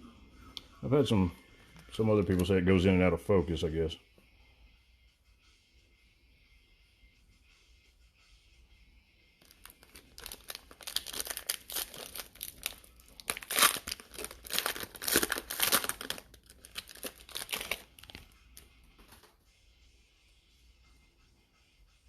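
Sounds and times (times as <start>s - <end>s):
foil wrapper crinkling and tearing: 9.4s - 18.2s.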